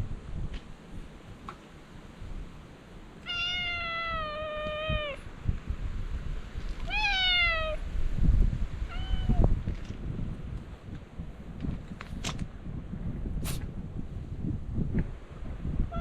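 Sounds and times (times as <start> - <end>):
cat meowing: 3.2 - 5.2, 6.8 - 7.8, 8.9 - 9.5.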